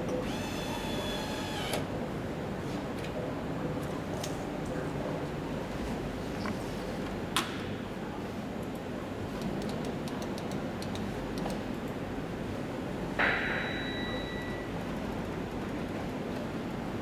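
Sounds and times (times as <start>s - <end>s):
steady background hum: 0.0s - 17.0s
sharp metallic clink: 13.2s - 14.6s.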